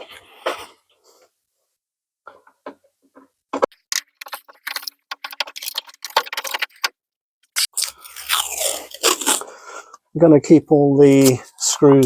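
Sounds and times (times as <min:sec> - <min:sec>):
metal screws clinking: 0:03.8 - 0:06.9.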